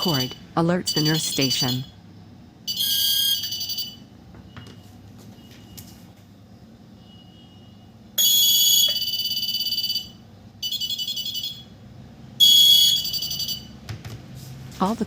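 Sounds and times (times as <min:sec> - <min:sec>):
electronic buzzer warbling alert: 0:00.0 - 0:01.9, 0:08.2 - 0:11.6.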